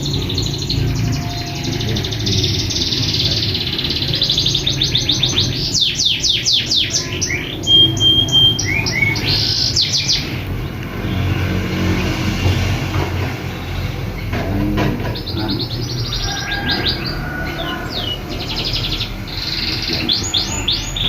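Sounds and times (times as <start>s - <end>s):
bird chirping and trilling: 0.0s - 12.6s, 15.0s - 21.0s
bird whistle: 4.2s - 10.4s.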